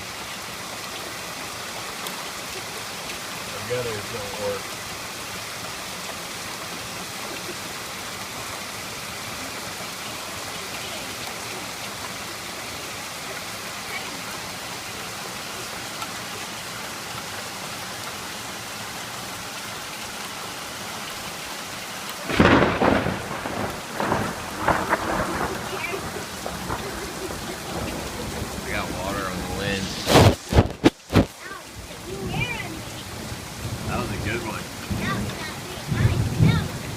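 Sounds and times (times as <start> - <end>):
heavy rain: 0.0 - 36.9
thunder clap and rumbling: 22.3 - 31.3, 33.2 - 36.9.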